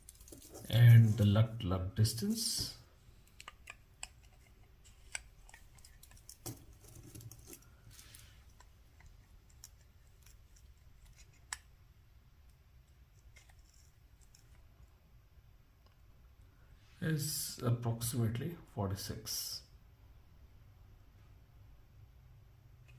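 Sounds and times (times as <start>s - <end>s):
soft rustle: 0.0s - 1.3s, 4.2s - 11.4s.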